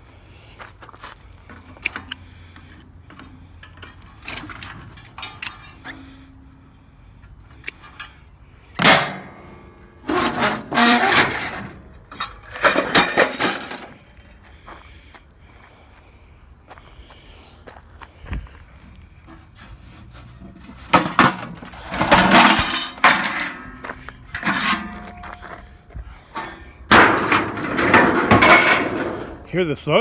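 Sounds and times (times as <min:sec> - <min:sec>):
metal parts clinking and knocking: 0:01.5 - 0:06.6, 0:07.3 - 0:14.1, 0:20.4 - 0:29.5
metal clattering: 0:01.5 - 0:06.7, 0:07.3 - 0:14.2, 0:19.2 - 0:29.5.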